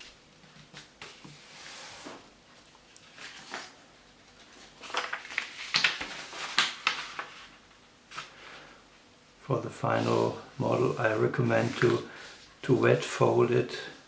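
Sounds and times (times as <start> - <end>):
paper folding and crinkling: 3.0 - 8.4, 9.8 - 13.2.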